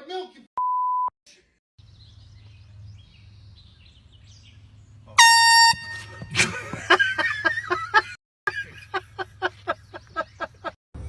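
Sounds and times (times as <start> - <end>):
air horn blast: 5.2 - 6.8.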